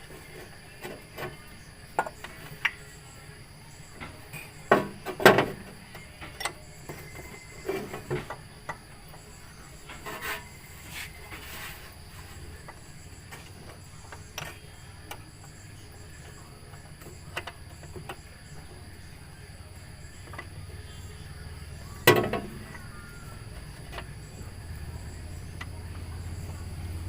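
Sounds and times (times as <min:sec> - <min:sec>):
hand tools clicking and knocking: 0:03.9 - 0:19.0.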